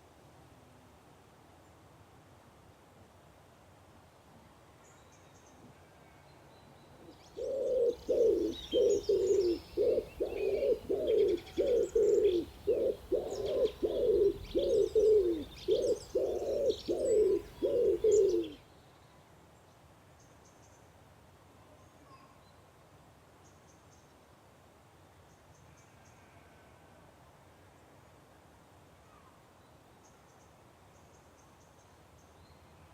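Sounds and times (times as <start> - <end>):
small birds chirping faintly: 4.4 - 26.3, 27.5 - 32.9
dove cooing: 7.3 - 18.6.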